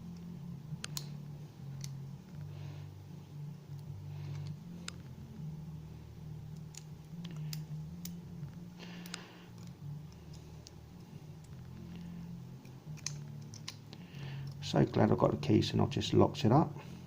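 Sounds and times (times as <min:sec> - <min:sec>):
steady low hum: 0:00.0 - 0:17.0
small metal parts clicking: 0:01.7 - 0:02.0, 0:12.6 - 0:14.6.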